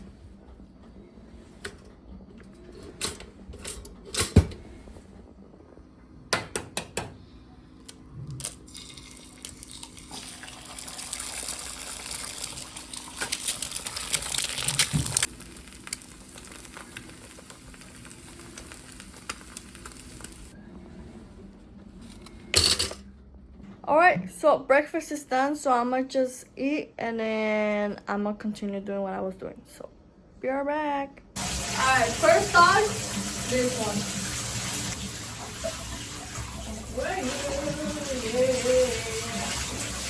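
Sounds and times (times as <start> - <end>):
tap water running: 8.4 - 20.6, 31.4 - 40.0.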